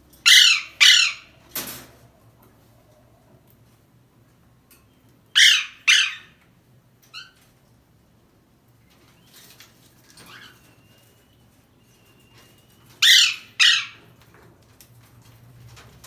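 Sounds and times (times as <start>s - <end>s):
parrot squawking: 0.2s - 1.3s, 5.4s - 6.4s, 13.0s - 14.0s
faint bird chirps: 8.9s - 13.5s.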